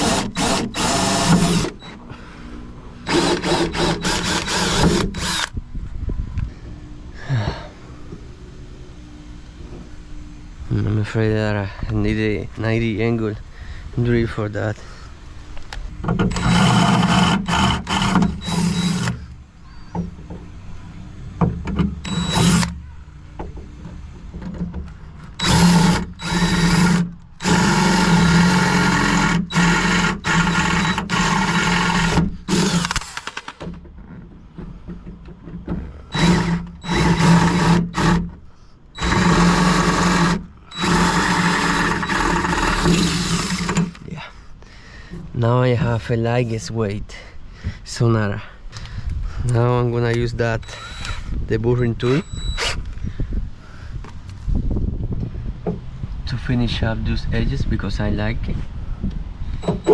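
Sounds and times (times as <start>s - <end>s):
electric drill drilling: 0.0s - 2.0s, 3.0s - 5.5s, 16.3s - 19.4s, 22.0s - 22.8s, 25.3s - 33.6s, 36.1s - 38.3s, 39.0s - 44.0s, 50.6s - 51.3s, 52.5s - 52.8s, 59.6s - 59.9s.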